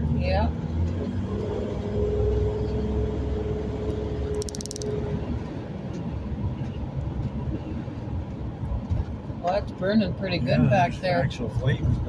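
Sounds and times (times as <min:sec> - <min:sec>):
vehicle road noise rumble: 0:00.0 - 0:12.0
rapid high clicking: 0:04.3 - 0:05.0.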